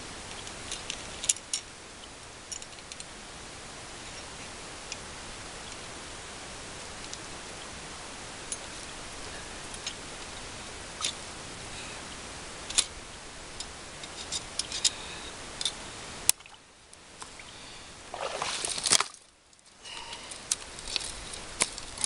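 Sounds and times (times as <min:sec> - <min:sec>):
steady hiss: 0:00.0 - 0:22.0
rustling scrape: 0:18.1 - 0:19.2
handling noise: 0:18.1 - 0:19.3.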